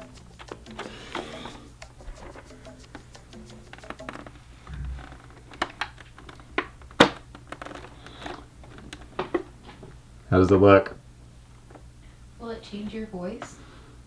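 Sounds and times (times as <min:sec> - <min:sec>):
helmet being handled: 0:00.0 - 0:09.8
low thud: 0:04.7 - 0:05.0.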